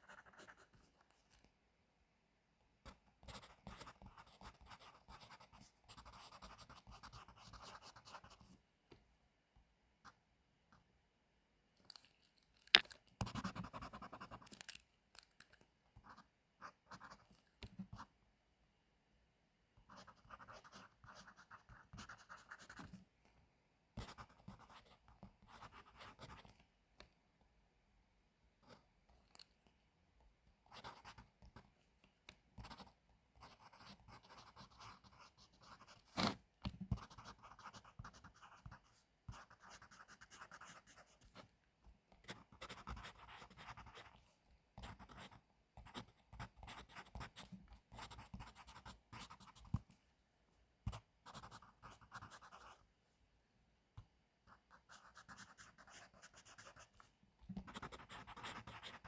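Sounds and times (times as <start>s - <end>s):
pencil scratching on paper: 0.0s - 1.0s, 3.2s - 8.5s, 13.2s - 14.4s, 19.9s - 23.0s, 24.0s - 26.5s, 30.7s - 31.4s, 32.6s - 41.4s, 42.2s - 44.2s, 44.8s - 49.8s, 50.9s - 52.8s, 54.7s - 57.0s, 57.6s - 59.0s.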